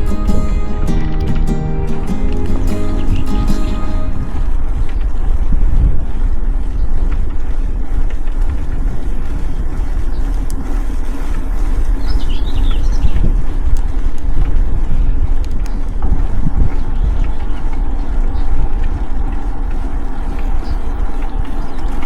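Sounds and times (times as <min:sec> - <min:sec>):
wind buffeting microphone: 0:00.0 - 0:22.0
small bird chirping: 0:15.5 - 0:22.0.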